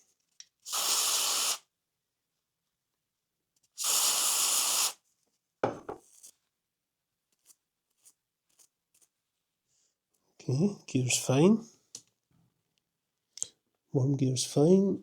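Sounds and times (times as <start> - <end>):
aerosol spray bursts: 0.6 - 1.7, 3.8 - 5.0.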